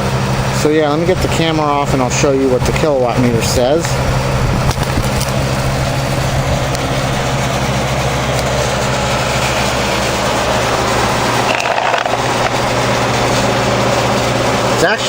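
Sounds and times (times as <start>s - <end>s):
box fan motor hum: 0.0s - 15.0s
handling rustle: 1.1s - 7.6s, 10.1s - 14.8s.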